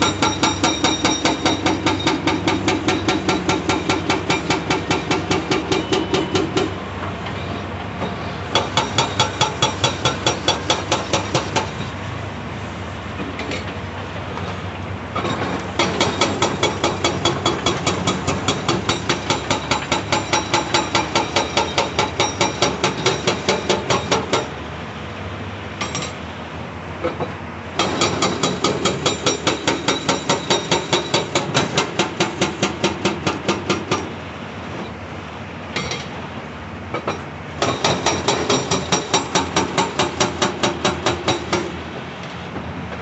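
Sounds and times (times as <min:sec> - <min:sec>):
hydraulic breaker hammering rock: 0:00.0 - 0:06.8, 0:08.0 - 0:11.9, 0:15.2 - 0:24.6, 0:27.0 - 0:34.1, 0:36.9 - 0:41.8.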